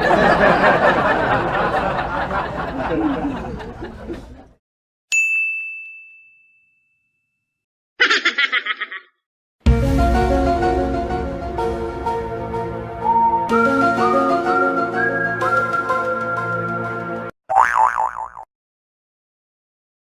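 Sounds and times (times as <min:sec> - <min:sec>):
bright bell ding: 0:05.1 - 0:07.1.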